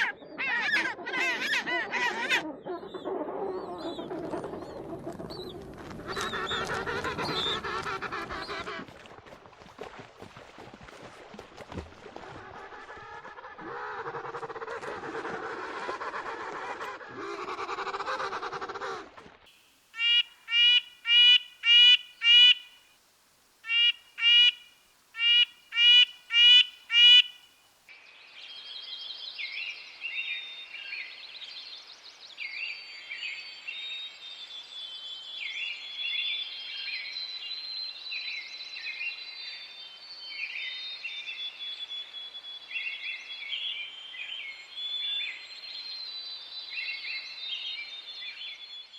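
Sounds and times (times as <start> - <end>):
short repeated calls: 20.0 - 22.8, 23.6 - 27.5.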